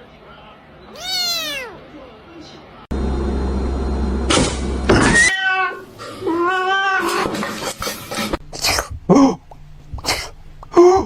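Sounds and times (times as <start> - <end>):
cat yowling and meowing: 1.0 - 1.8, 5.0 - 7.2.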